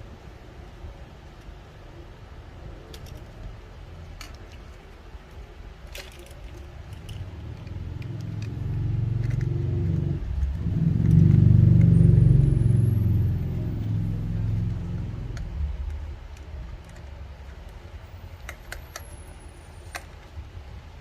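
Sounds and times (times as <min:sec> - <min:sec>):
vehicle engine passing: 0:07.1 - 0:16.7.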